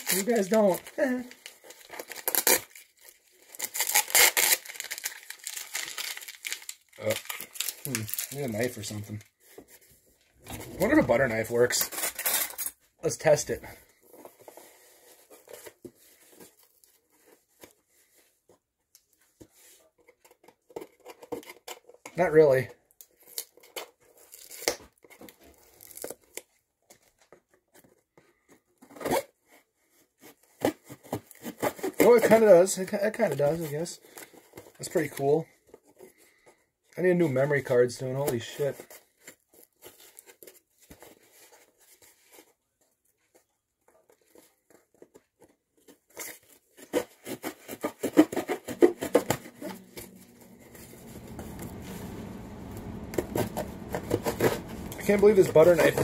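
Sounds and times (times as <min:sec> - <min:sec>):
knife tearing packaging: 0:00.0 - 0:08.9, 0:10.8 - 0:12.8, 0:23.0 - 0:26.4, 0:38.3 - 0:42.5, 0:44.1 - 0:50.1
wrapping crinkling: 0:00.0 - 0:10.2, 0:10.8 - 0:13.5, 0:38.2 - 0:56.0
knife sawing through cardboard: 0:46.1 - 0:49.6
low steady hum: 0:49.2 - 0:56.0.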